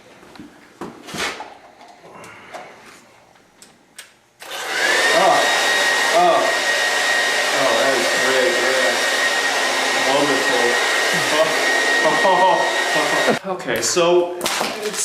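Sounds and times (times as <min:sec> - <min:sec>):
hair dryer blowing: 0:04.4 - 0:13.4.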